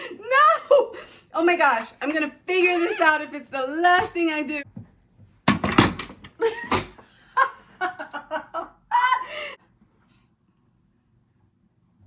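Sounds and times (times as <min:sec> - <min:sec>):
woman laughing: 0:00.0 - 0:01.2, 0:02.5 - 0:03.4, 0:06.4 - 0:09.6.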